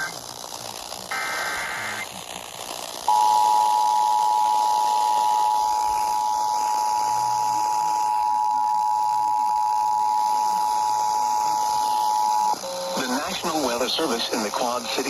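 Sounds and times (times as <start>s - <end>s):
emergency alert two-tone signal: 3.1s - 13.0s
faint hiss: 10.5s - 15.0s.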